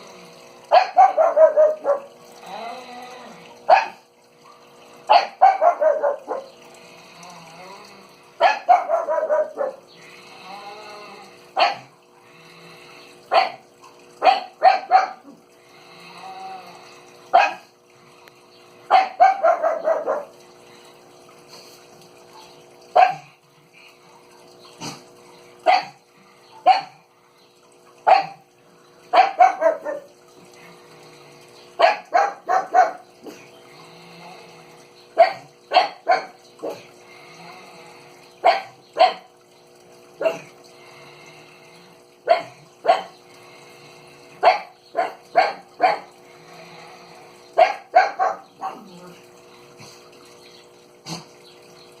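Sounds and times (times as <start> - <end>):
dog barking: 0.7 - 2.1, 3.7 - 4.0, 5.1 - 6.5, 8.4 - 9.8, 11.6 - 11.9, 13.3 - 13.6, 14.2 - 15.3, 17.3 - 17.7, 18.9 - 20.4, 23.0 - 23.3, 25.6 - 26.0, 26.6 - 27.0, 28.0 - 28.4, 29.1 - 30.1, 31.8 - 33.1, 35.2 - 36.8, 38.4 - 39.3, 40.2 - 40.5, 42.3 - 43.2, 44.4 - 46.1, 47.6 - 48.9.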